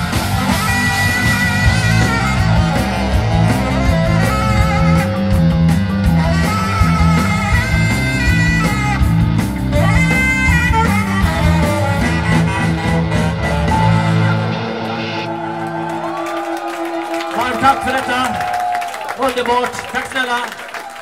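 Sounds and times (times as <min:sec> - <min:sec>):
lead guitar: 0:00.0 - 0:16.1
bass line: 0:00.0 - 0:18.4
drums: 0:00.0 - 0:21.0.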